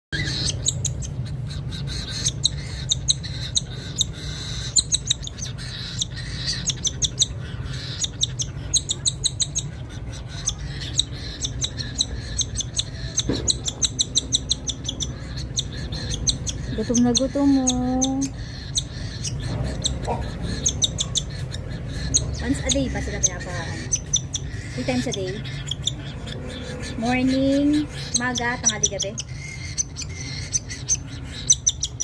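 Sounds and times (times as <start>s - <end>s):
baby cockatiels begging calls: 0.2s - 32.0s.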